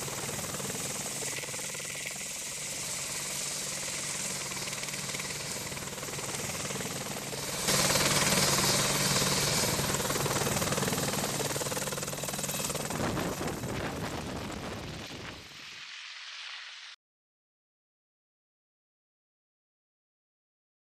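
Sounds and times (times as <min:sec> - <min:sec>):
helicopter rotor and turbine noise: 0:00.0 - 0:16.2.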